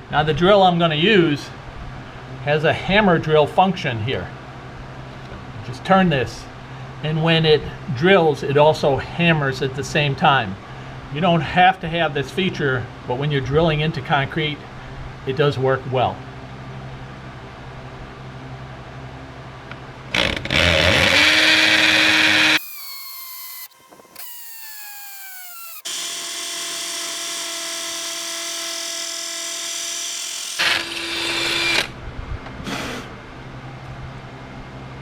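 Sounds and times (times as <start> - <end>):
hammer drill drilling concrete: 20.2 - 31.9.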